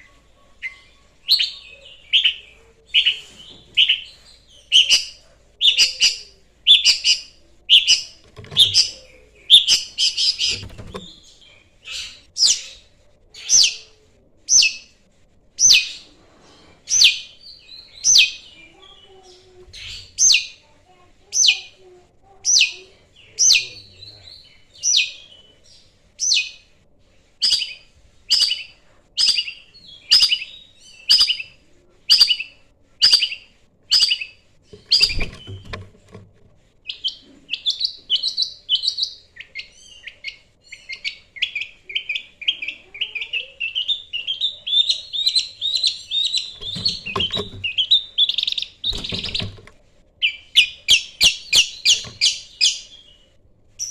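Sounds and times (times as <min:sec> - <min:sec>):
bird harsh calls: 0:00.0 - 0:13.8, 0:32.1 - 0:36.0
bird chattering song: 0:00.0 - 0:13.9, 0:22.4 - 0:26.6, 0:27.4 - 0:36.2, 0:36.8 - 0:53.9.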